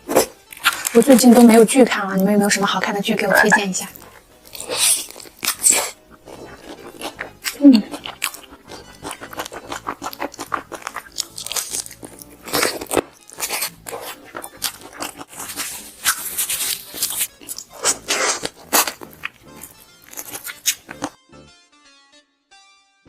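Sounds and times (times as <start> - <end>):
crunching and chewing fried chicken: 0.0 - 1.7, 3.3 - 21.2.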